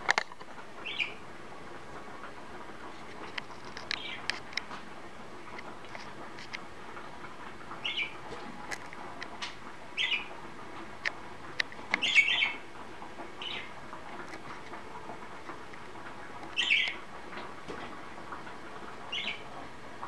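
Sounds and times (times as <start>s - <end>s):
budgerigars chirping: 0.8s - 1.2s, 7.8s - 8.2s, 10.0s - 10.3s, 12.0s - 12.6s, 13.4s - 13.7s, 16.6s - 17.0s, 19.1s - 19.4s
light clicks and ticks: 11.0s - 12.1s.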